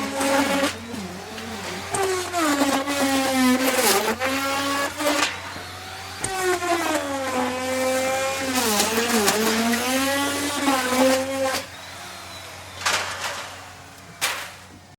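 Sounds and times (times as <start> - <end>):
wood router whining: 0.0 - 14.9.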